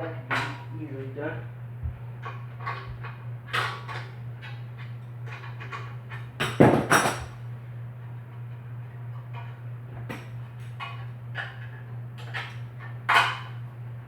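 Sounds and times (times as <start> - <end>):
steady low hum: 0.0 - 14.0
clatter of sharp knocks: 6.4 - 7.3.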